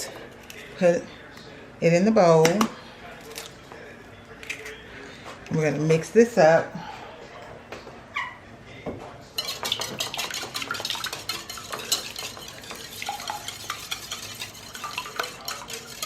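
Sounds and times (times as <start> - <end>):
utensil beating in a bowl: 9.4 - 16.0.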